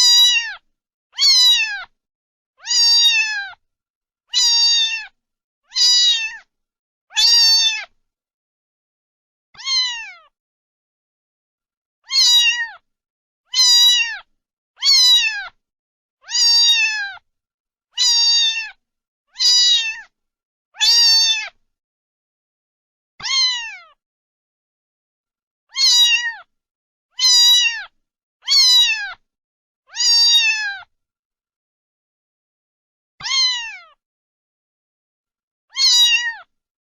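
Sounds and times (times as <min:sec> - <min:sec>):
cat meowing: 0:00.0 - 0:00.6, 0:01.2 - 0:01.9, 0:02.6 - 0:03.6, 0:04.3 - 0:06.5, 0:07.1 - 0:08.0, 0:09.6 - 0:10.3, 0:12.0 - 0:12.8, 0:13.5 - 0:15.6, 0:16.2 - 0:17.2, 0:18.0 - 0:18.8, 0:19.4 - 0:20.1, 0:20.8 - 0:21.6, 0:23.2 - 0:24.0, 0:25.7 - 0:26.5, 0:27.2 - 0:29.2, 0:29.9 - 0:30.9, 0:33.2 - 0:34.0, 0:35.7 - 0:36.5.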